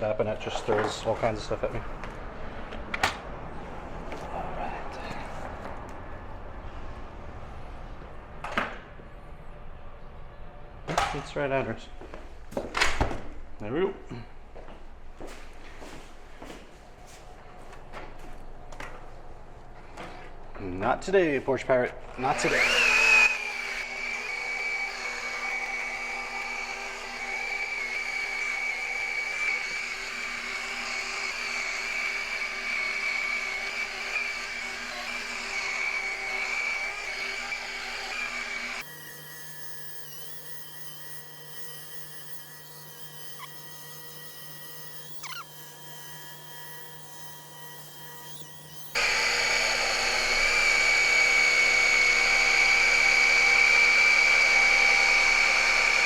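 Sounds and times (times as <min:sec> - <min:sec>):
glass polisher high whine: 0:22.4 - 0:56.0.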